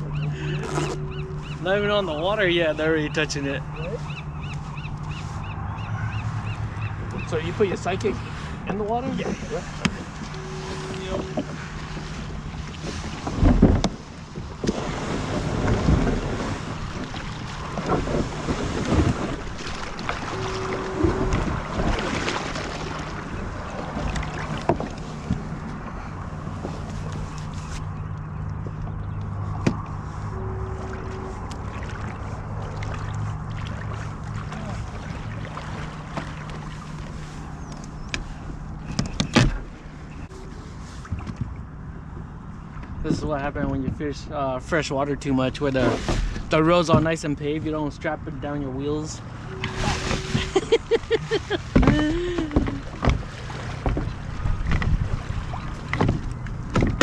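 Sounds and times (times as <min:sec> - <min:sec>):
ocean surf: 0:00.0 - 0:26.4, 0:48.7 - 0:56.7
boat engine humming: 0:00.0 - 0:57.0
water noise: 0:00.0 - 0:57.0
wind: 0:00.0 - 0:57.0
wind buffeting microphone: 0:49.2 - 0:57.0.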